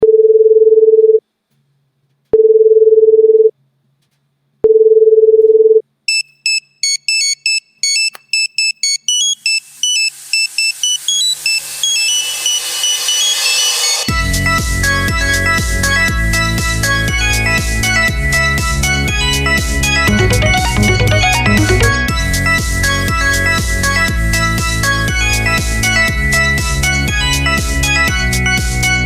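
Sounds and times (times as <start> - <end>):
high-pitched beeping ringtone melody: 20.1 - 22.1
electronic music with bass: 20.1 - 22.2.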